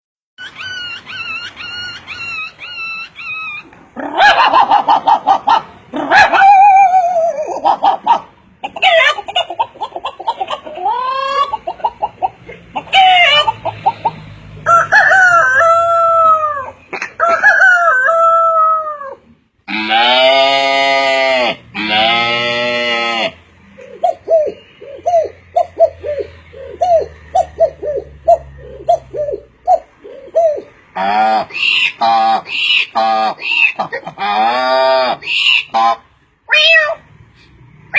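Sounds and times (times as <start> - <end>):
roosters crowing: 0.4 - 23.5, 30.6 - 36.0
hens clucking: 0.9 - 18.2, 21.8 - 36.1
long low animal calls: 18.3 - 37.0.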